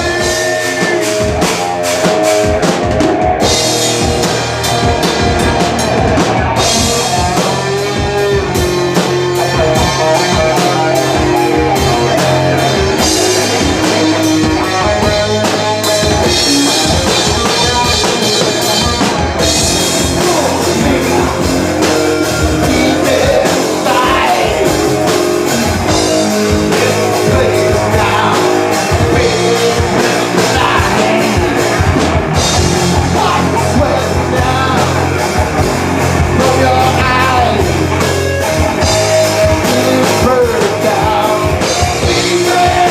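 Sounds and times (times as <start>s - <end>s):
person singing: 0.0s - 2.3s, 16.2s - 32.0s, 32.6s - 42.9s
rock band playing live: 0.0s - 42.9s.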